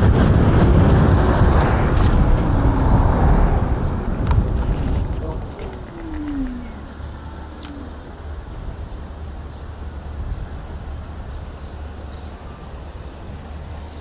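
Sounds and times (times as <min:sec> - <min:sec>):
scooter rumble and wind noise: 0:00.0 - 0:14.0.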